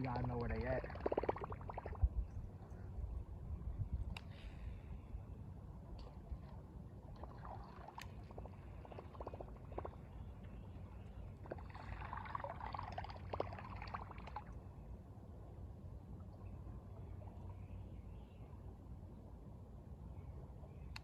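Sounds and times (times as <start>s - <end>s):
water splashing and trickling: 0.0s - 2.7s, 6.0s - 10.2s, 11.4s - 14.6s.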